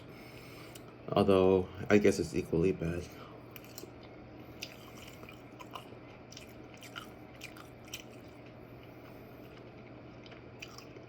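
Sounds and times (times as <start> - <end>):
low steady hum: 0.0 - 11.0
person chewing food: 3.4 - 11.0.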